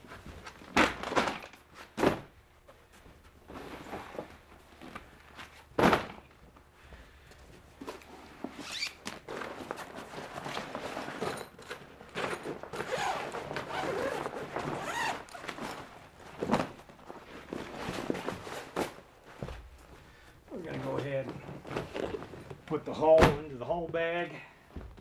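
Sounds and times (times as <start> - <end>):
heavy fabric rustling and scraping: 7.6 - 23.3.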